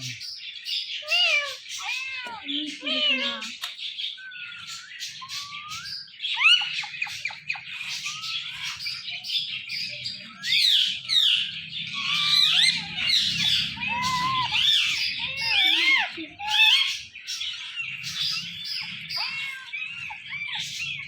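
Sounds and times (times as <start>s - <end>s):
parrot squawking and chattering: 0.0s - 0.3s, 1.0s - 3.7s, 4.5s - 21.0s.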